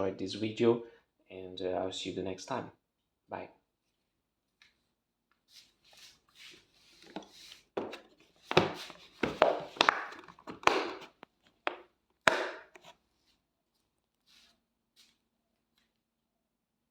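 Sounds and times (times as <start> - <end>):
hard objects knocking and clicking: 7.1 - 12.9.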